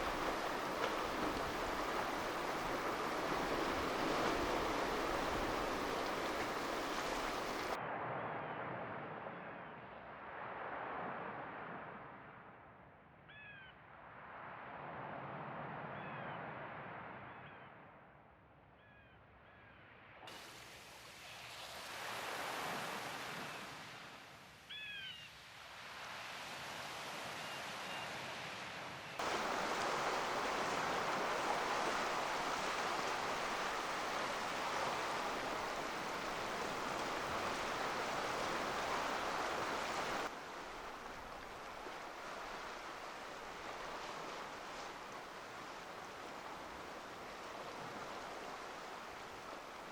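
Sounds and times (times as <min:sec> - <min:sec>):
waves surging against rocky shore: 0:00.0 - 0:07.8, 0:29.2 - 0:49.9.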